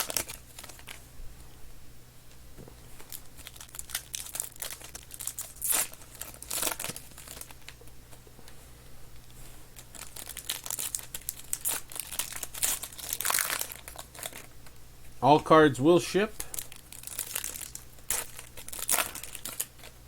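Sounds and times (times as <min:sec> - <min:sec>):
plastic wrapping crinkling and tearing: 0:00.0 - 0:01.0, 0:03.0 - 0:08.2, 0:09.7 - 0:14.8, 0:16.4 - 0:20.0.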